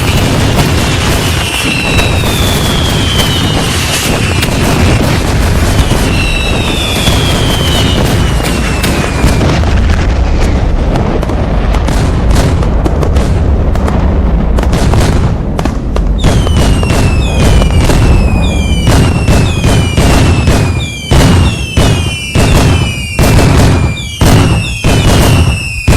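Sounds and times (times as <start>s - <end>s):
fireworks whistles: 0.0s - 10.0s, 16.2s - 25.9s
fireworks bangs and crackling: 0.0s - 25.9s.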